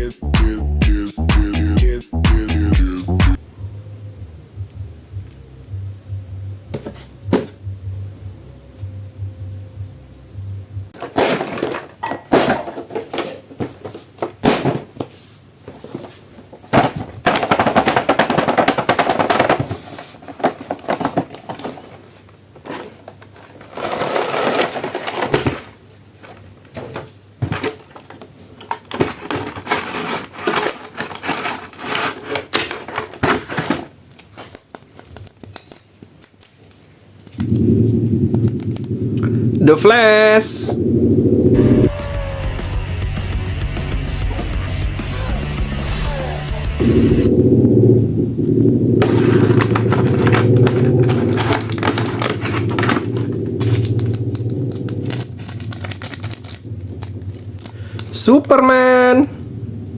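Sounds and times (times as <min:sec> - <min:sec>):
plastic packaging crinkling: 0:28.8 - 0:36.8, 0:49.0 - 0:58.3.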